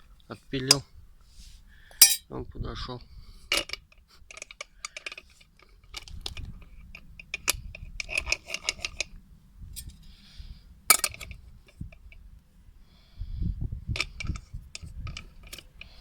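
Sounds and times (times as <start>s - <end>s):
metal clank: 1.9s - 2.2s.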